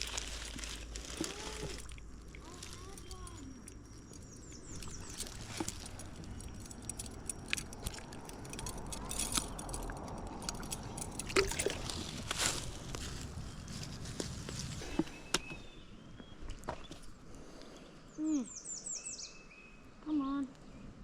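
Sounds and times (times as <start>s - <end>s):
creek water running: 0.0s - 15.2s.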